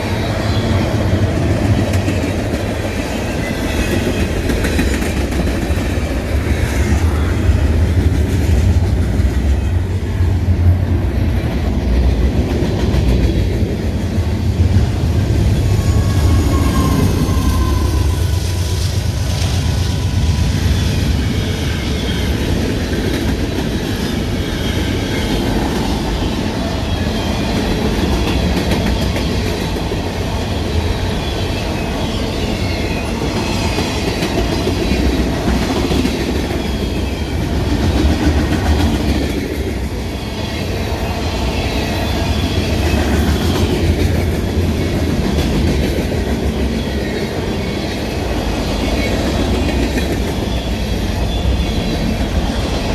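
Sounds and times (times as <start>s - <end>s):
train cars clattering on rails: 0.0s - 52.9s
wheels squealing: 15.3s - 22.3s.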